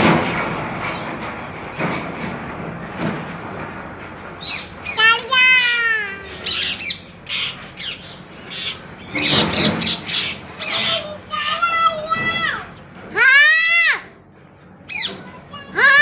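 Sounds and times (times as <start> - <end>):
parrot calling and squawking: 4.4 - 11.4, 14.9 - 16.0.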